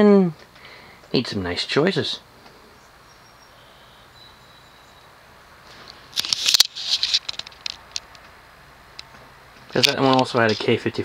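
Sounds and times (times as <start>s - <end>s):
faint steady background noise: 0.0s - 11.0s
rustling and clicking: 5.6s - 10.8s.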